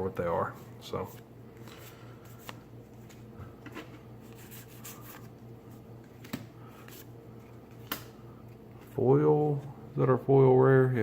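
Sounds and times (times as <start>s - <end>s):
cards rustling and snapping: 1.1s - 5.4s, 6.0s - 9.0s.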